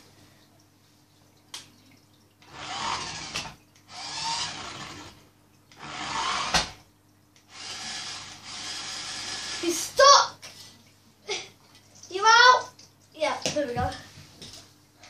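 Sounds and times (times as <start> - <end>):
toy car electric motor whirring: 2.5 - 5.2, 5.8 - 6.8, 7.5 - 10.0.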